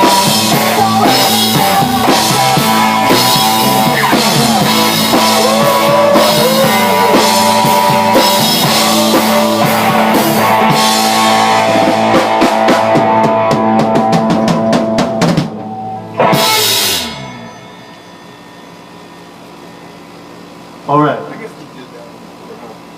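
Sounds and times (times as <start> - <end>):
fast drum hits: 0.0 - 17.4
rock band playing: 0.0 - 20.0
loud cymbal crash ringing: 15.6 - 20.3.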